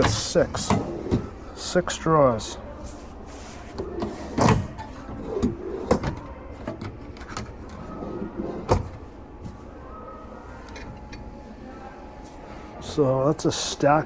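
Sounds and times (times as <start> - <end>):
plastic drawers sliding: 0.0 - 1.3, 3.3 - 9.6.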